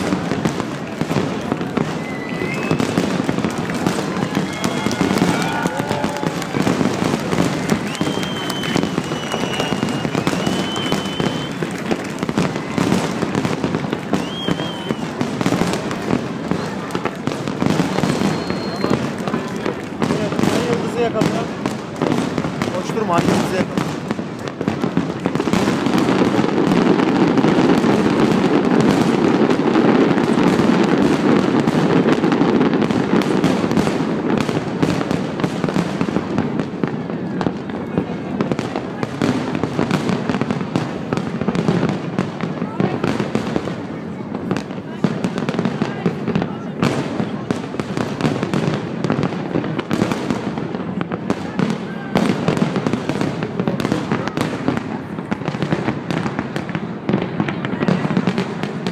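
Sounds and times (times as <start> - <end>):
fireworks crackling pops: 0.0 - 58.9
high firework whistles: 0.1 - 16.8, 17.4 - 19.2.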